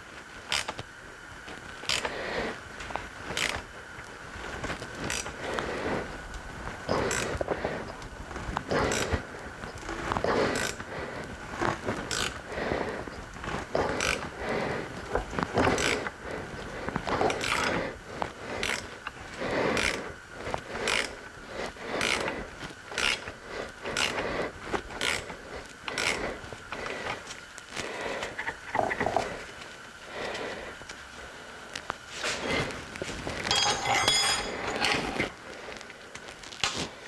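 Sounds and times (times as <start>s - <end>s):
ratchet wrench clicking: 22.0s - 22.2s.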